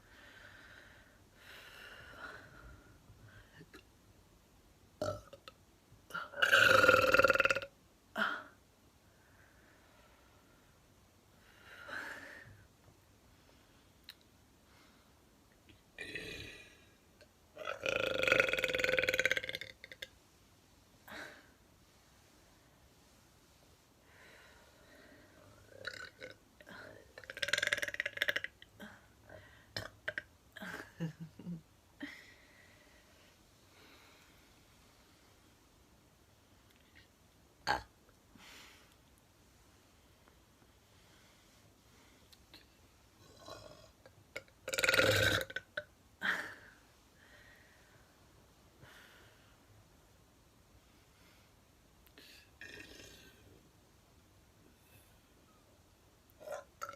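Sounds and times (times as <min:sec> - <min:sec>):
woman belching: 0:05.0 - 0:05.5, 0:06.1 - 0:07.7, 0:17.6 - 0:20.1, 0:25.8 - 0:26.4, 0:27.2 - 0:28.6, 0:37.6 - 0:37.9, 0:43.4 - 0:45.9, 0:52.6 - 0:53.4
woman burping: 0:05.0 - 0:05.5, 0:06.1 - 0:08.6, 0:16.0 - 0:16.8, 0:17.6 - 0:20.1, 0:25.8 - 0:28.9, 0:29.8 - 0:32.2, 0:37.6 - 0:37.9, 0:43.4 - 0:46.7, 0:52.2 - 0:53.4.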